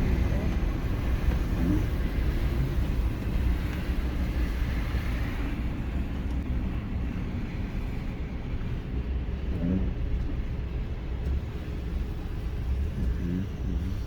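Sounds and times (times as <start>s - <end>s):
car engine rumble: 0.0s - 14.0s
road noise: 0.0s - 14.0s.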